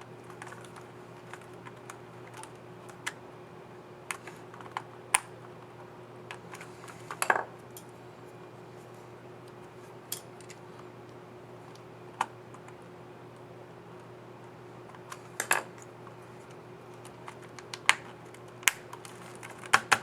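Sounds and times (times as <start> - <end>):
laptop keys clicking: 17.0 - 20.0.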